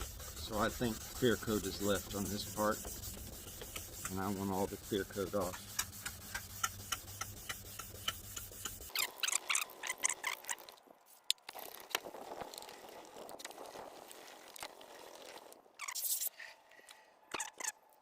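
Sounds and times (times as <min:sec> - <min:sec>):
sandpaper rubbing on plastic: 0:00.0 - 0:09.7.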